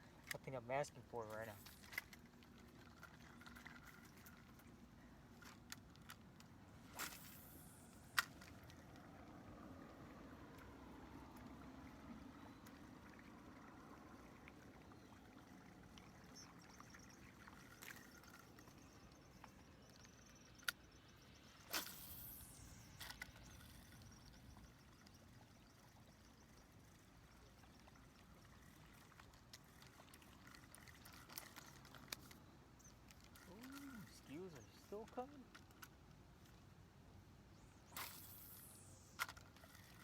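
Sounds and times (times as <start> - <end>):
small ticks: 5.4 - 36.6
fishing rod cast whoosh: 6.8 - 8.8, 21.5 - 24.3, 37.8 - 40.0.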